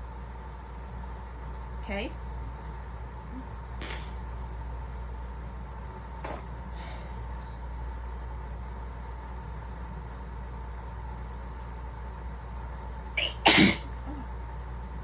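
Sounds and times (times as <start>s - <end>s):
steady low hum: 0.0s - 15.0s
person sneezing: 3.8s - 4.2s, 13.2s - 14.2s.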